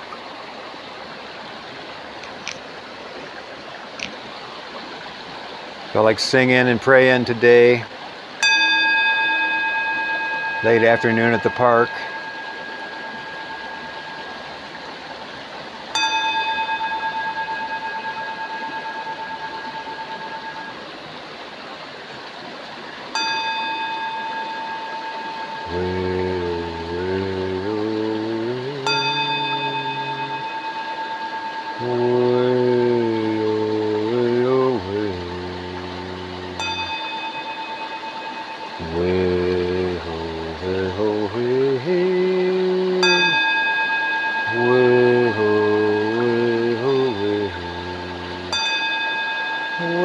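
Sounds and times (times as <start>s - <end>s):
singing bowl ringing: 8.4s - 21.0s, 23.1s - 50.0s.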